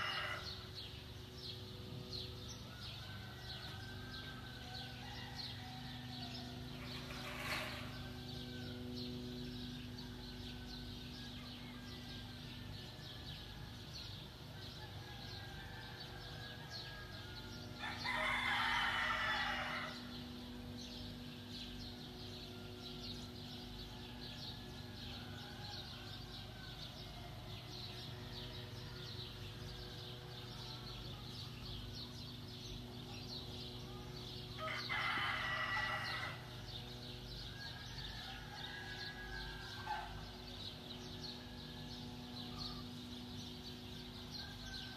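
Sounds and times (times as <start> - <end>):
rooster crowing: 0.0 - 0.7, 2.6 - 9.0, 14.7 - 20.2, 34.6 - 36.8, 37.4 - 42.0
steady low hum: 0.0 - 44.9.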